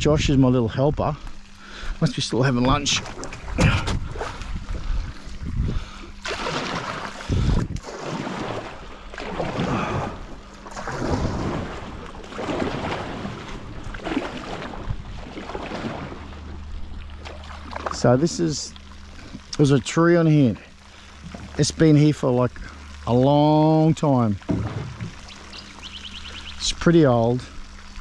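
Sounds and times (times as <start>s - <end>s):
water sloshing and splashing: 0.8s - 28.0s
wind buffeting microphone: 2.7s - 6.0s, 7.2s - 7.8s.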